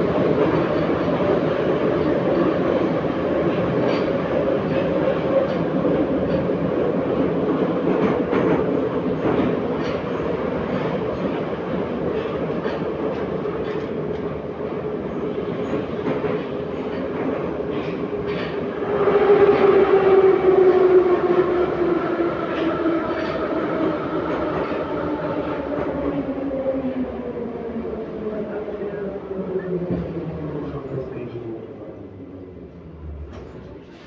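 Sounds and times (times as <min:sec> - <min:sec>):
train running gear rumble: 0:00.0 - 0:30.8, 0:31.9 - 0:34.0.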